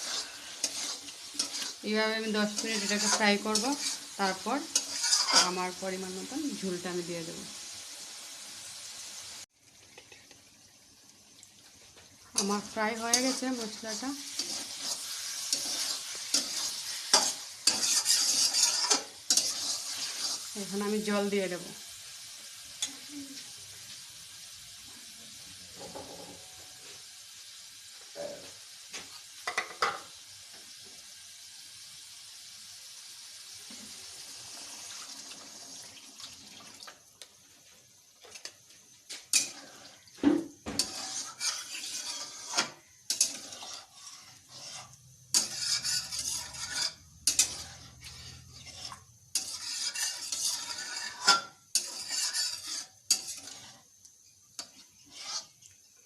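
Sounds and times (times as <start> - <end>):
spoon scraping and clattering pan: 0.0 - 6.4, 12.4 - 20.6, 25.8 - 26.9, 29.4 - 30.1, 38.2 - 54.0, 54.6 - 55.7
paste sizzling in pan: 0.0 - 56.0.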